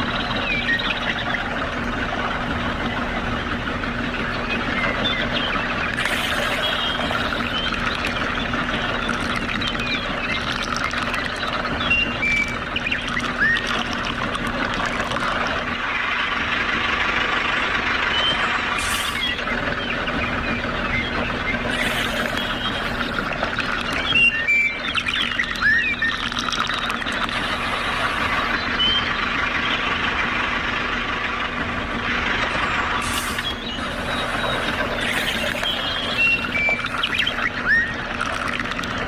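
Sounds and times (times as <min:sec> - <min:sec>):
birds chirping: 0:00.0 - 0:39.0
small motor humming: 0:05.6 - 0:19.5, 0:21.6 - 0:38.9.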